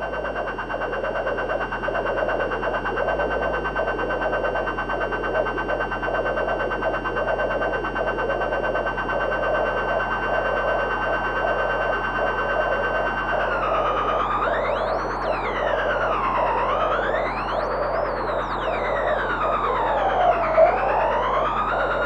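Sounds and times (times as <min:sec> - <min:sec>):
high whining drone: 0:00.0 - 0:22.0
pulsing crackling noise: 0:00.0 - 0:22.0.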